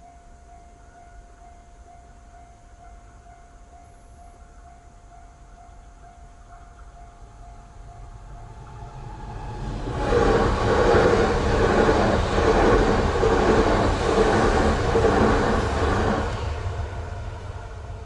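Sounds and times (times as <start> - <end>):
level crossing warning bell: 0.0 - 9.3
train wheels pulsing: 5.6 - 18.0
train passing fast: 7.2 - 18.0.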